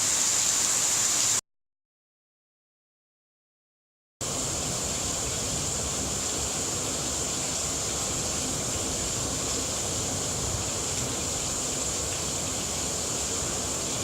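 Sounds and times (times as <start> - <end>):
rain falling steadily: 0.0 - 1.4, 4.2 - 14.0.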